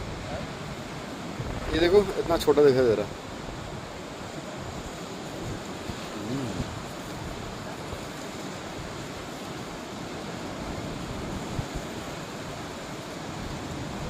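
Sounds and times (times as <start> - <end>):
wind on microphone: 0.0 - 2.5, 3.3 - 9.3
waterfall rushing: 0.0 - 14.0.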